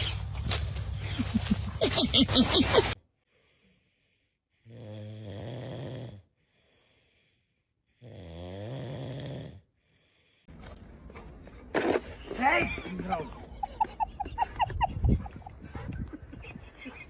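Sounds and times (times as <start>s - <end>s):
pet snoring: 4.6s - 6.2s, 8.0s - 9.6s.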